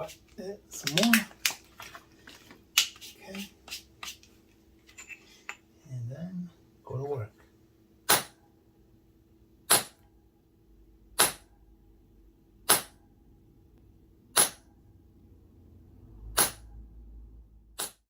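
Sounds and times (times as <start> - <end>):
mallet striking leather stamping tool: 8.1 - 8.4, 9.7 - 10.0, 11.2 - 11.5, 12.6 - 13.0, 14.4 - 14.7, 16.4 - 16.7, 17.8 - 18.0.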